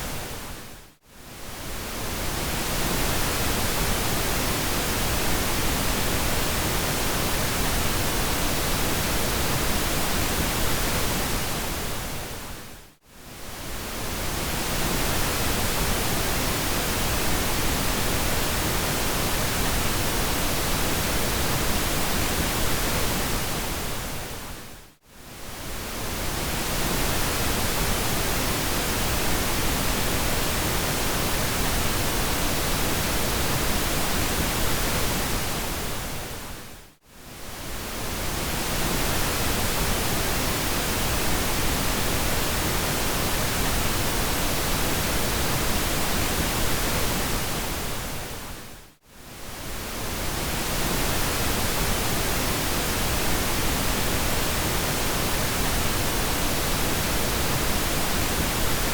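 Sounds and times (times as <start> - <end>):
pink noise hiss: 13.2 - 58.9.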